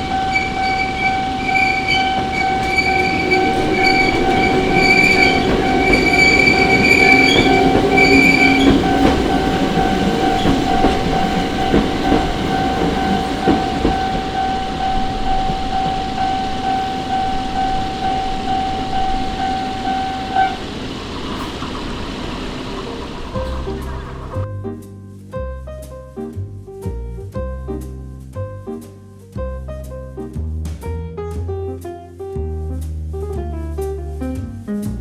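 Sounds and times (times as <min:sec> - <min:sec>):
train wheels squealing: 0:00.0 - 0:24.4
level crossing warning bell: 0:00.0 - 0:24.5
train running noise: 0:00.0 - 0:24.5
wheels knocking over rail joints: 0:00.0 - 0:24.5.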